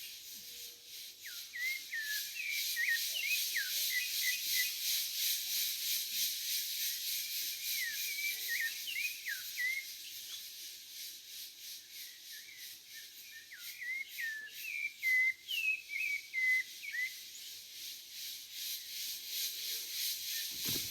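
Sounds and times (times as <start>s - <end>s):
cicadas hissing: 0.0s - 20.9s
thrush singing whistled notes: 12.0s - 17.7s, 20.3s - 20.9s.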